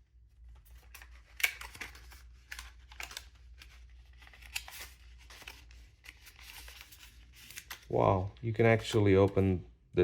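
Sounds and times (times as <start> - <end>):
cardboard packaging rustling: 0.4 - 8.0.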